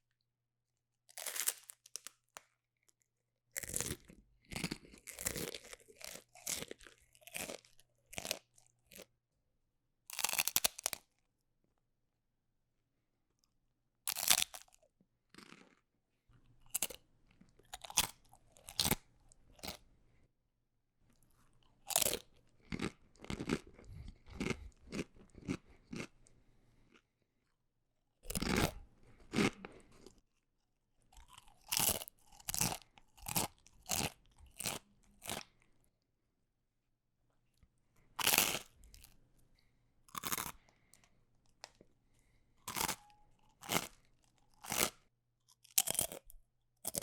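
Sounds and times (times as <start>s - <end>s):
biting into crunchy food: 3.6s - 9.1s, 10.1s - 11.0s, 14.1s - 15.8s, 16.6s - 19.8s, 21.1s - 27.0s, 28.2s - 30.2s, 31.1s - 35.6s, 38.2s - 39.2s, 40.1s - 40.9s, 42.7s - 47.0s
chewing crunches: 3.6s - 9.1s, 10.1s - 11.0s, 14.1s - 15.8s, 16.4s - 19.9s, 21.1s - 27.0s, 28.2s - 30.2s, 31.1s - 35.7s, 38.2s - 47.0s.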